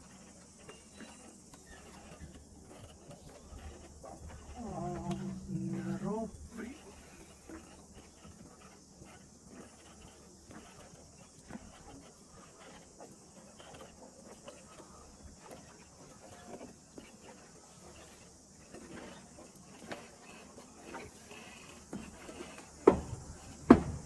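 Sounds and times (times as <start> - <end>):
footsteps on wooden walkway: 20.9 - 24.0.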